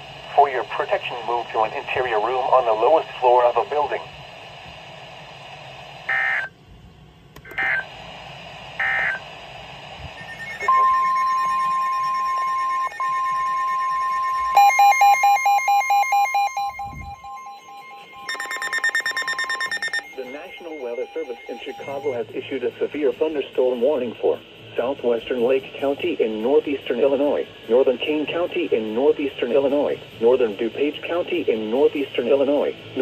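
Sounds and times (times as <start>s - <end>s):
screechy data bursts: 10.2s - 22.3s
pulsing electronic beeps: 10.2s - 22.4s
fast beeping: 10.2s - 22.6s
steady warning alert tone: 10.2s - 23.3s.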